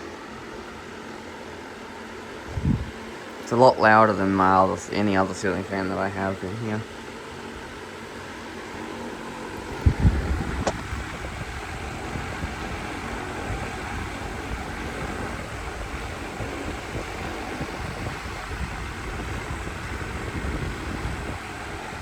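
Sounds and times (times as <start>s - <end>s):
ceiling fan running: 0.0s - 22.0s.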